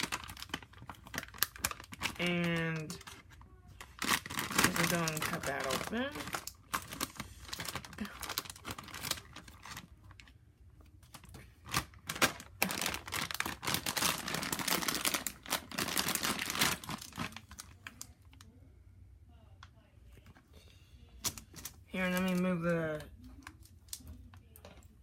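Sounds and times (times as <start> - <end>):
packaging crinkling and tearing: 0.0 - 18.5.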